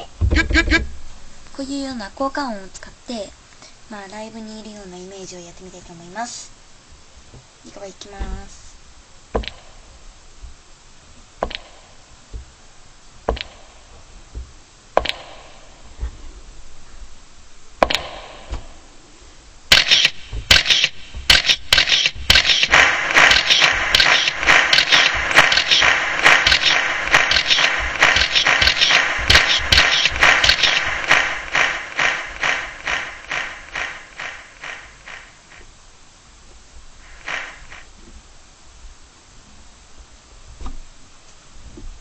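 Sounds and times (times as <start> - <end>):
sharp taps: 9.4 - 9.7, 11.4 - 12.5, 13.3 - 16.1, 19.7 - 35.7, 37.1 - 37.9.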